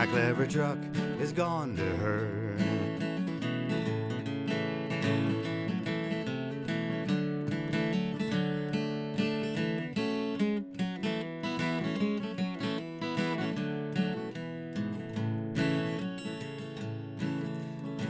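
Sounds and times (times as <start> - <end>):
acoustic guitar strumming: 0.0 - 8.2.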